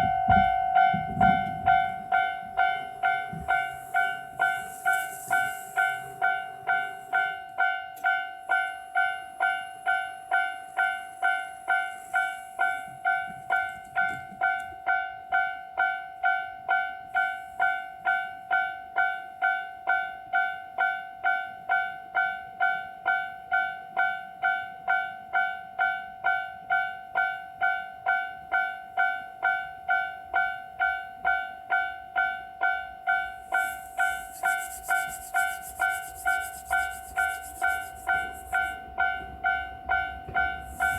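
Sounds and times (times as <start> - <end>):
level crossing warning bell: 0.0 - 40.9
rushing noise: 33.4 - 38.8, 40.6 - 40.9.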